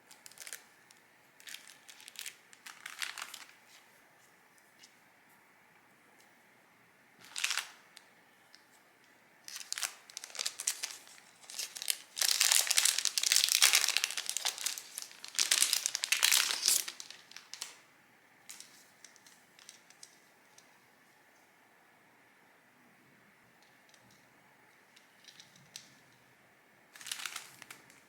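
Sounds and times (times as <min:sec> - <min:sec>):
packaging crinkling and rustling: 0:00.0 - 0:00.7, 0:01.4 - 0:03.8, 0:07.2 - 0:07.8, 0:09.4 - 0:17.8, 0:18.5 - 0:20.2, 0:26.9 - 0:28.0.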